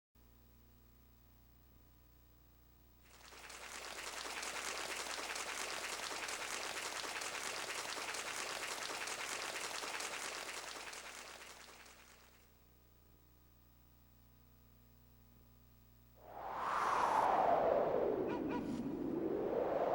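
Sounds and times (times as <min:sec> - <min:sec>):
low steady hum: 0:00.2 - 0:04.4, 0:10.6 - 0:19.9
dense crackle of noise: 0:03.1 - 0:12.4.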